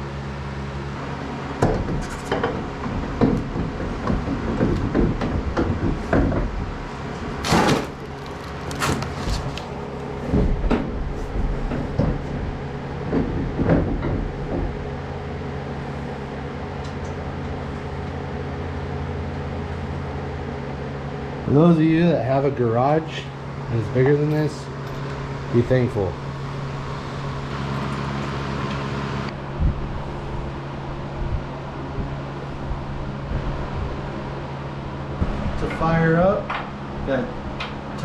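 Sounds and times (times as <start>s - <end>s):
steady low hum: 0.0s - 38.0s
tools and car parts clunking: 7.2s - 12.3s.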